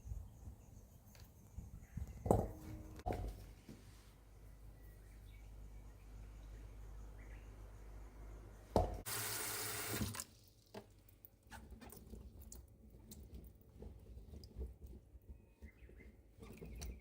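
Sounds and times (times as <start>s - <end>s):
water running from tap: 9.0s - 10.3s.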